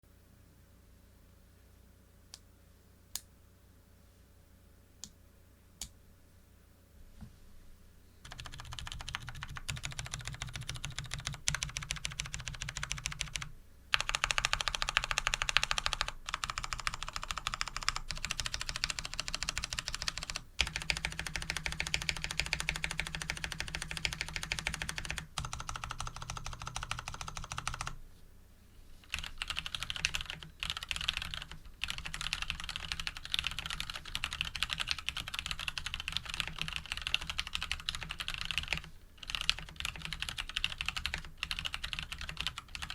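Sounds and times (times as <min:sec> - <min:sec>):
fast mechanical keyboard typing: 0:08.2 - 0:28.0, 0:29.1 - 0:42.9.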